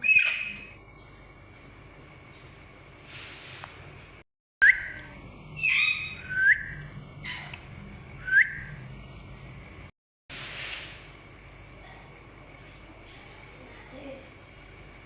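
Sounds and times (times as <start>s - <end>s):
parrot whistling: 0.0s - 0.7s, 5.6s - 7.5s, 8.2s - 8.7s.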